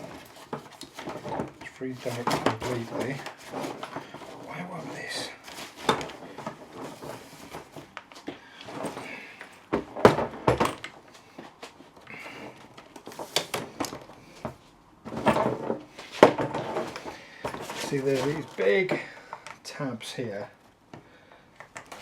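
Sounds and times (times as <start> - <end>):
suitcase handle knocks and rattles: 8.7 - 11.1, 13.4 - 19.1.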